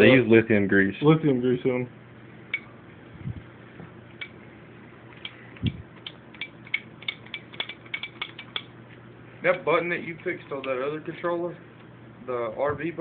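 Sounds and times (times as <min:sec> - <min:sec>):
soft low thumps: 0:03.1 - 0:04.0.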